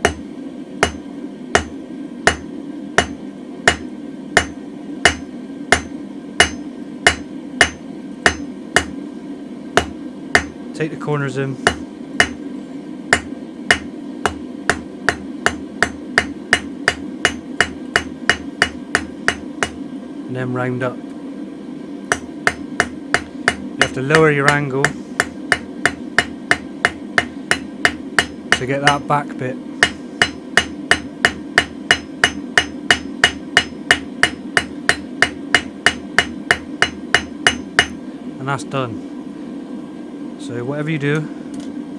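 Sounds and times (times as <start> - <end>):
hammer striking steel on anvil: 0.0 - 0.2, 0.8 - 9.0, 9.8 - 10.6, 11.6 - 12.4, 13.1 - 19.8, 22.1 - 29.0, 29.8 - 38.0
steady low hum: 0.0 - 41.9.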